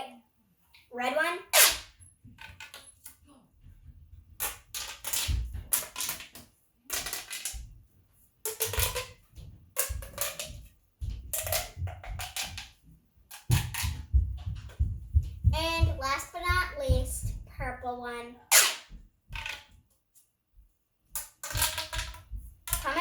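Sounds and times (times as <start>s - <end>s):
plastic pop tube crackly clicks: 4.4s - 7.7s, 9.8s - 10.6s, 11.3s - 14.0s.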